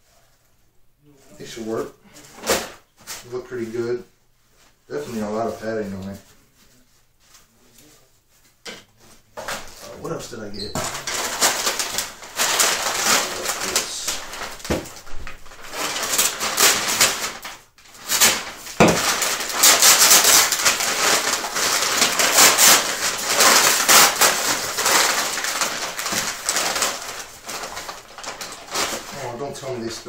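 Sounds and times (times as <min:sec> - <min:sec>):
plastic packaging crinkling: 0:09.4 - 0:30.0.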